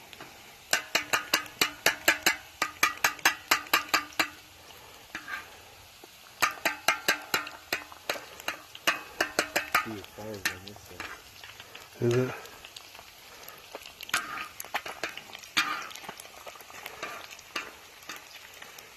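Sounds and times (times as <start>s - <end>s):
fork beating eggs in a bowl: 0.8s - 4.4s, 6.4s - 12.5s.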